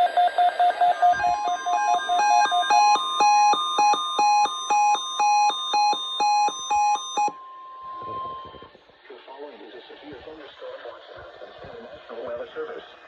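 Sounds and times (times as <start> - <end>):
loud beeping alarm: 0.0 - 8.8
steady warning alarm tone: 0.0 - 8.8.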